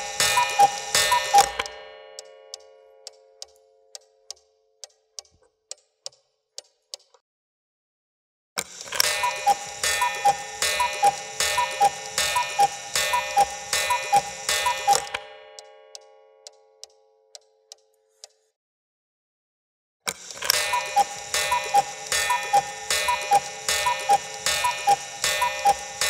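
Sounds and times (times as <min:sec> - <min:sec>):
dense alarm ringing: 0:00.0 - 0:01.6, 0:09.1 - 0:15.2, 0:20.6 - 0:26.0
two-note cuckoo call: 0:00.0 - 0:01.6, 0:09.2 - 0:15.2, 0:20.6 - 0:26.0
clock ticking: 0:00.0 - 0:07.1, 0:08.9 - 0:18.4, 0:20.3 - 0:26.0.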